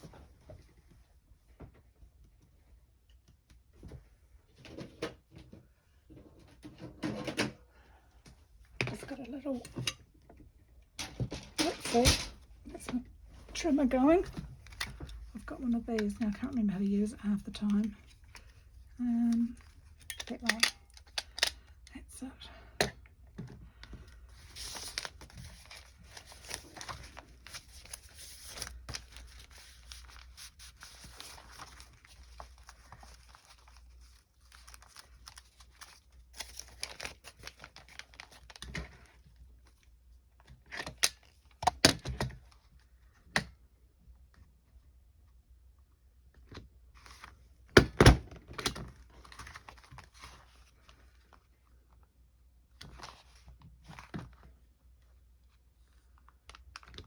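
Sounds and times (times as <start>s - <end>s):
paper rustling: 24.0s - 39.8s.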